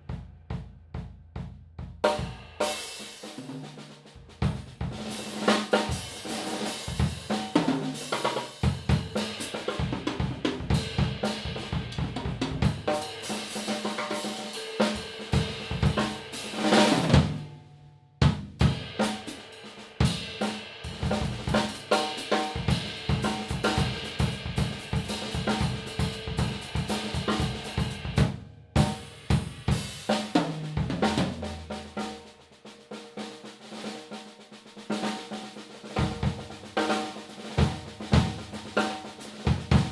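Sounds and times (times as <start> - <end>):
kick drum: 0.0 - 2.0
snare drum: 0.1 - 17.5, 18.2 - 39.9
cymbals: 2.0 - 17.5, 18.6 - 39.9.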